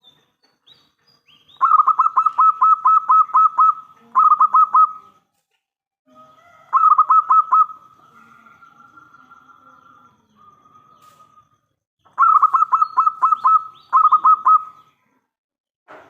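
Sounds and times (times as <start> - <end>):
faint high chirp: 6.1 - 15.2.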